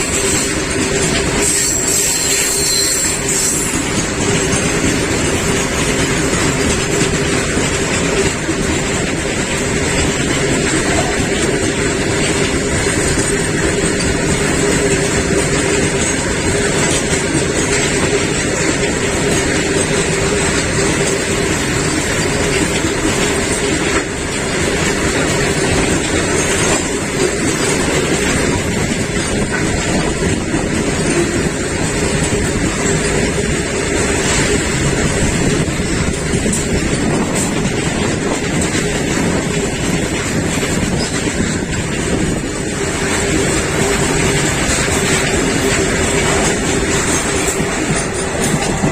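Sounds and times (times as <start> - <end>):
train rumbling and rattling on rails: 0.0 - 48.9.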